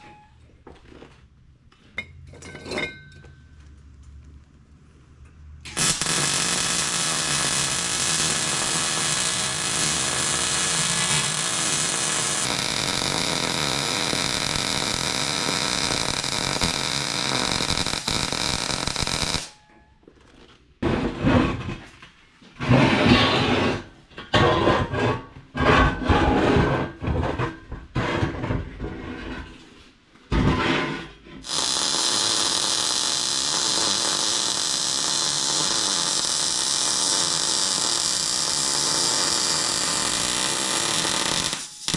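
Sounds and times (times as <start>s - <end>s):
electric grinder on metal: 5.7s - 19.5s, 31.5s - 41.9s.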